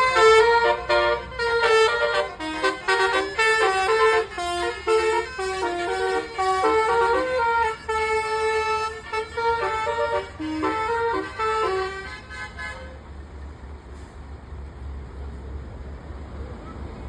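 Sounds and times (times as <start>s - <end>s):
multi-tone bus air horn tune: 0.0s - 13.2s
faint low engine hum: 0.2s - 17.0s.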